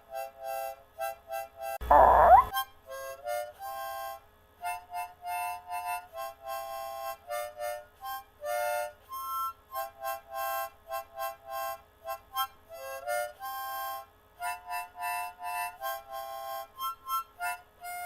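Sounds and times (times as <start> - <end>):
harmonica melody: 1.1 - 18.0
rising pitch sound effect: 1.8 - 2.5.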